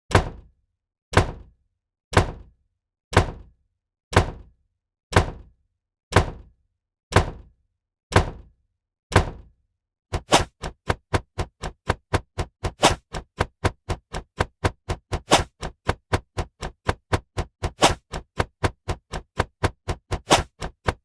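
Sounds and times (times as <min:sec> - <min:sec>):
dull thunk sound effect: 0:00.1 - 0:00.5, 0:01.2 - 0:01.5, 0:02.2 - 0:02.5, 0:03.1 - 0:05.5, 0:06.1 - 0:06.5, 0:07.1 - 0:07.5, 0:08.1 - 0:08.5, 0:09.1 - 0:09.5, 0:10.1 - 0:21.0.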